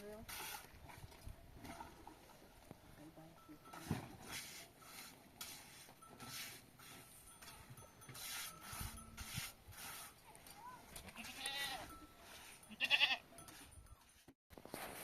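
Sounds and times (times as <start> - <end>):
livestock bleating: 11.0 - 11.9, 12.6 - 13.2.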